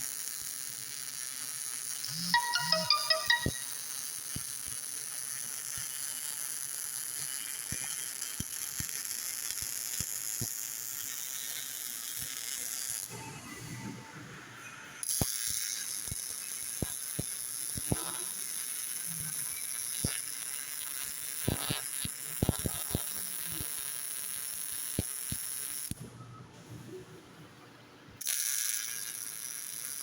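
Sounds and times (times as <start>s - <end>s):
welding arc hissing and crackling: 0.0s - 2.1s, 4.1s - 13.1s, 15.0s - 26.0s, 28.2s - 30.0s.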